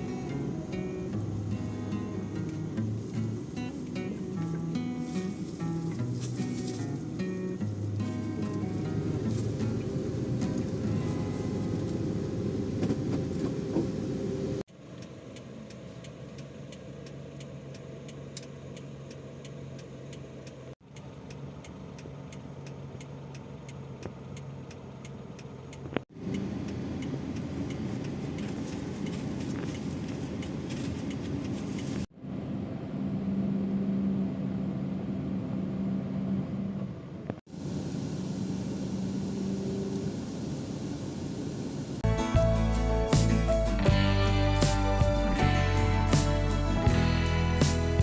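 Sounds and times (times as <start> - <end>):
car engine: 0.0 - 48.0
road noise: 0.0 - 48.0
faint regular ticking: 14.7 - 31.9.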